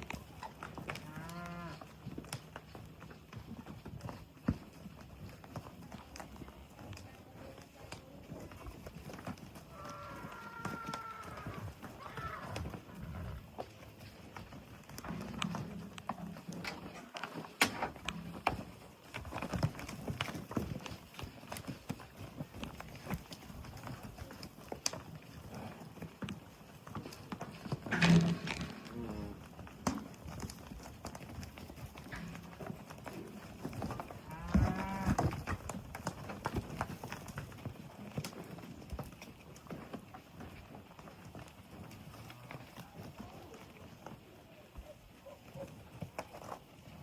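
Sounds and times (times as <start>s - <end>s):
hooves clopping on ground: 0.0s - 47.0s
cow mooing: 1.1s - 1.8s, 9.7s - 12.7s, 34.2s - 35.3s
cow lowing: 9.7s - 13.5s, 27.9s - 29.5s.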